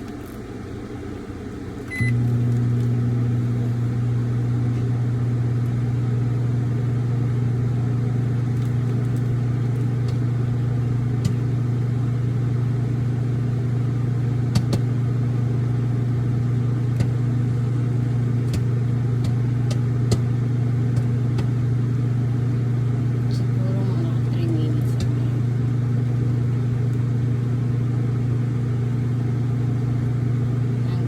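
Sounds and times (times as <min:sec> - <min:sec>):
microwave oven humming: 0:00.0 - 0:31.0
popcorn kernels popping: 0:14.5 - 0:14.9.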